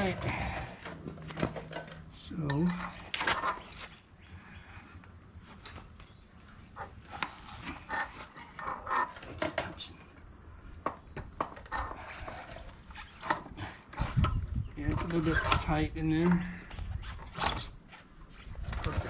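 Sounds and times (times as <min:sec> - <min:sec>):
clicks and scrapes of wheel work: 0:00.2 - 0:04.0, 0:06.8 - 0:09.7.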